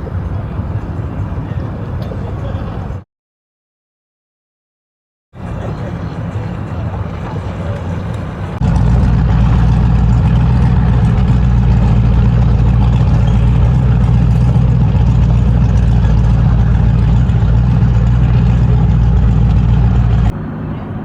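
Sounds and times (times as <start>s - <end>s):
engine idling: 5.8s - 20.8s.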